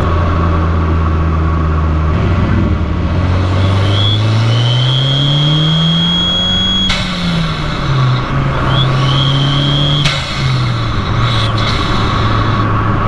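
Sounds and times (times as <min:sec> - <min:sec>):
car engine accelerating: 0:00.0 - 0:13.0
turbo whistle: 0:03.0 - 0:12.7
hiss of air release: 0:03.2 - 0:12.7.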